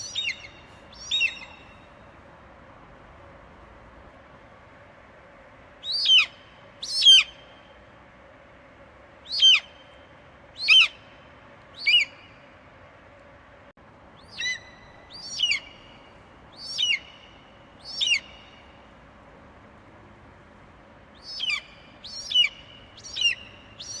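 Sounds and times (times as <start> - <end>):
faint steady hiss: 0.0 - 24.0
eagle shrill cries: 5.8 - 7.3, 9.3 - 9.8, 10.6 - 11.0, 14.3 - 15.8.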